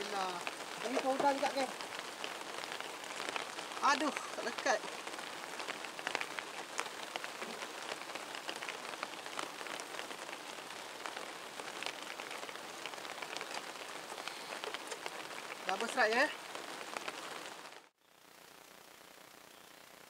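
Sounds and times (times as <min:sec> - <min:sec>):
raindrops ticking: 0:00.0 - 0:17.9
rain falling: 0:00.0 - 0:19.5.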